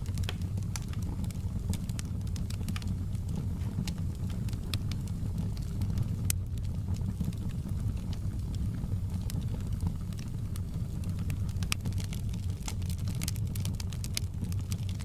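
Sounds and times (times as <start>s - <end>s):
sharp pops of fire: 0.0s - 7.4s
fire crackling: 0.0s - 15.0s.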